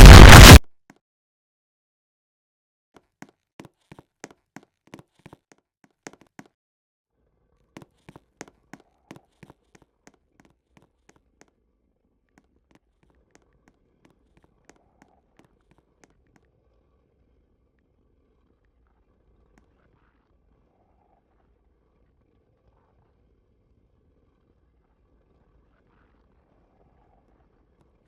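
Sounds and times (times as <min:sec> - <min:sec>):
low hum: 0:00.0 - 0:00.6.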